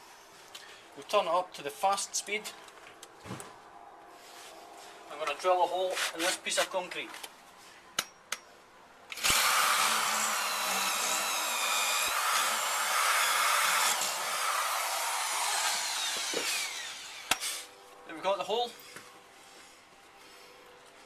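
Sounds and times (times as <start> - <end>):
drill drilling into concrete: 9.1 - 17.7.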